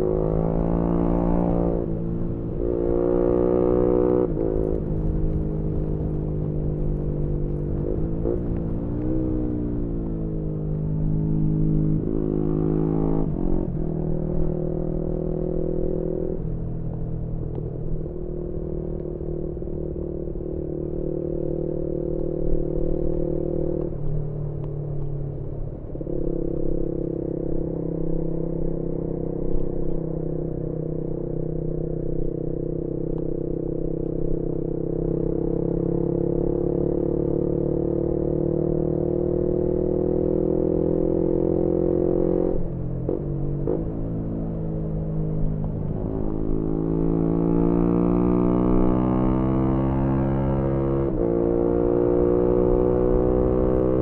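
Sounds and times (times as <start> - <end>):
motorcycle engine revving: 11.0 - 16.4, 32.3 - 44.0, 44.6 - 54.0.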